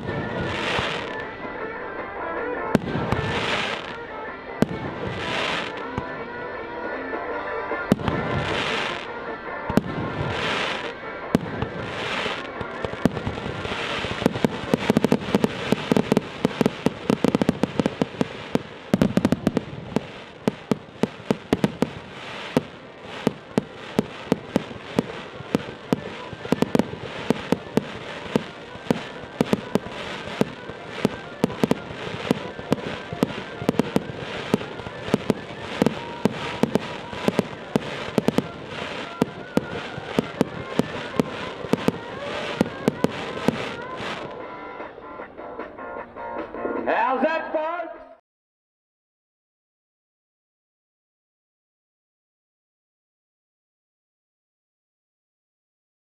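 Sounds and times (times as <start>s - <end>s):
fireworks hissing: 0.0s - 1.4s, 2.8s - 4.0s, 4.6s - 6.1s, 7.9s - 44.4s
fireworks bangs and crackles: 0.0s - 6.4s, 7.6s - 44.4s.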